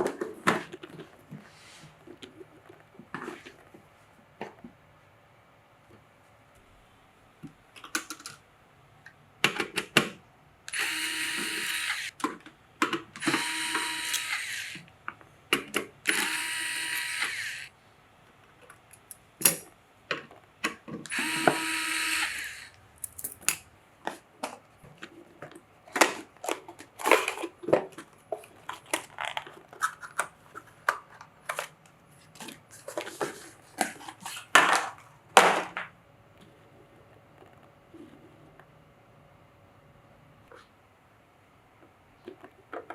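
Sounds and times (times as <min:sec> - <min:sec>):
electric screwdriver running: 0:10.7 - 0:12.1, 0:13.2 - 0:14.9, 0:16.1 - 0:17.7, 0:21.1 - 0:22.8
clicks of parts being handled: 0:23.0 - 0:23.6.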